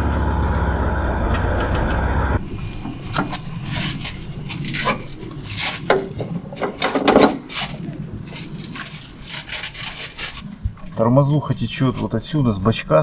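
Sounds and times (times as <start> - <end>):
light knocks and clatter: 2.4 - 12.2
rubbing: 2.4 - 13.0.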